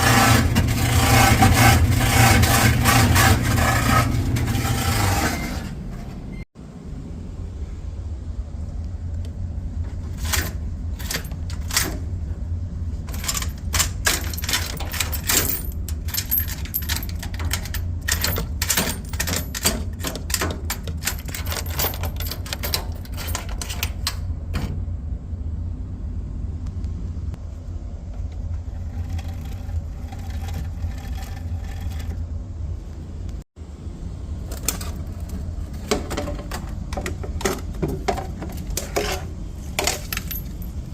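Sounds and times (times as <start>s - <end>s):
clothes dryer humming: 0.0s - 40.9s
dryer clicking and rattling: 13.0s - 24.9s, 34.5s - 40.6s.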